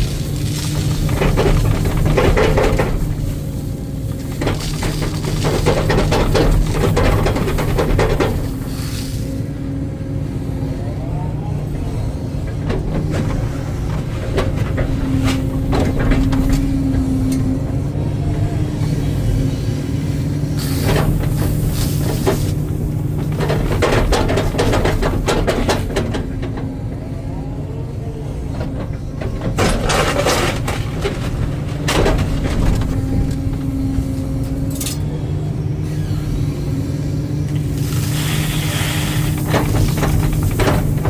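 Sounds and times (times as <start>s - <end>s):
clattering and scraping: 0.0s - 8.8s, 12.5s - 17.8s, 20.6s - 26.8s, 28.5s - 35.1s, 37.6s - 41.0s
excavator diesel engine: 0.0s - 41.0s.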